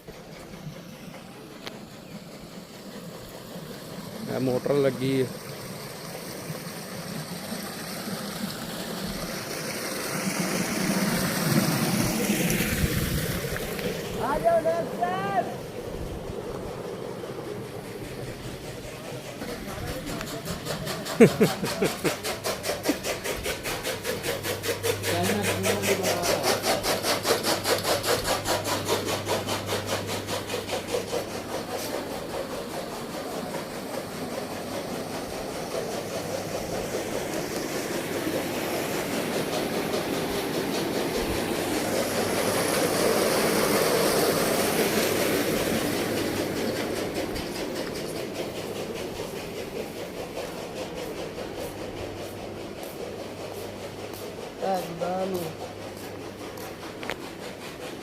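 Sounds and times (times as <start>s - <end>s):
steady rushing noise: 6.6s - 58.0s.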